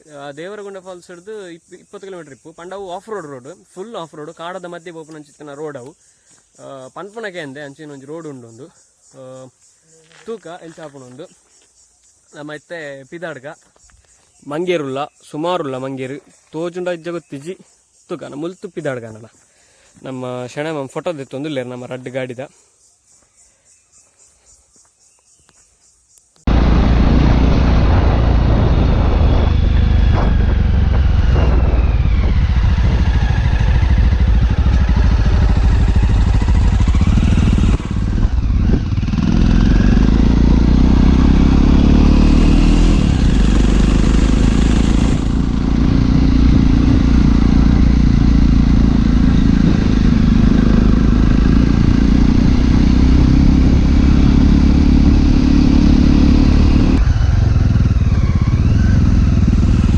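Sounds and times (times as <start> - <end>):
motorcycle engine running: 26.5 - 59.9.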